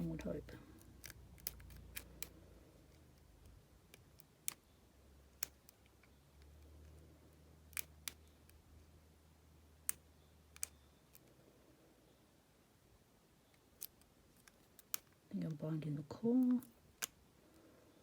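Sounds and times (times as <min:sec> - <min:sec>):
lock pick metallic clicks: 0:00.1 - 0:04.7, 0:09.8 - 0:11.3, 0:13.5 - 0:15.2.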